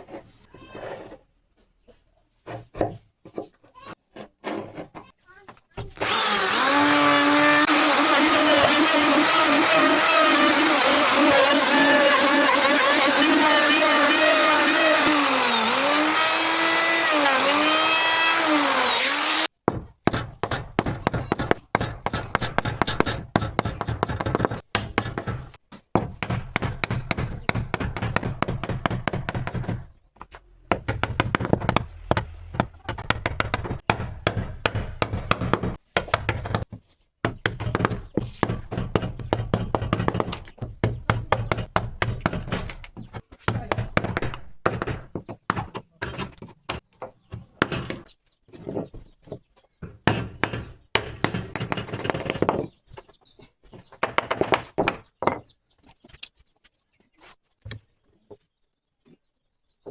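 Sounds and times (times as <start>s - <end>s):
knocking and tapping on wood: 2.5s - 3.6s, 19.6s - 48.0s, 48.6s - 53.1s, 53.7s - 55.5s.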